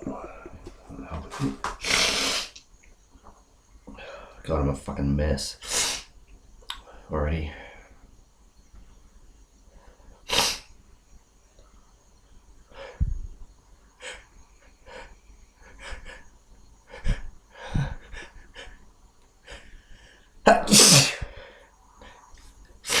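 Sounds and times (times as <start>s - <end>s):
man sniffing and breathing sharply: 1.8s - 2.6s
man sneezing: 20.5s - 21.3s.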